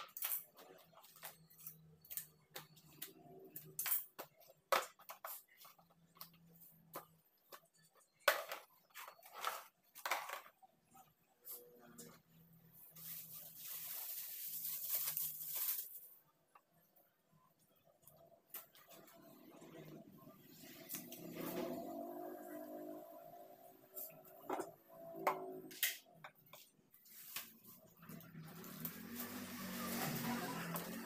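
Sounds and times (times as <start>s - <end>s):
groceries being handled: 0.0s - 16.4s.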